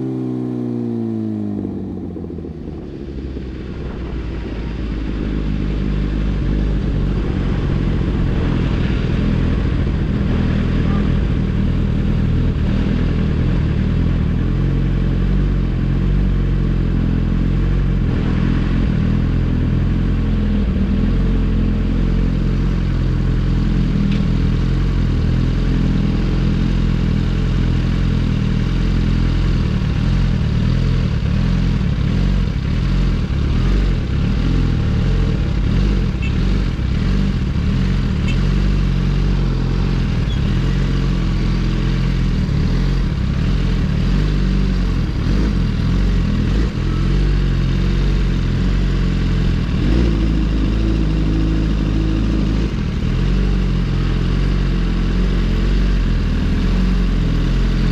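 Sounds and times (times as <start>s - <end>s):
motorcycle engine revving: 0.0s - 57.9s.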